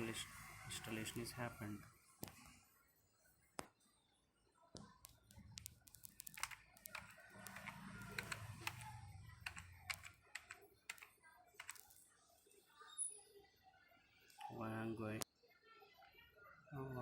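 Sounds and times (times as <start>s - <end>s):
keyboard keys clicking: 5.6s - 11.8s.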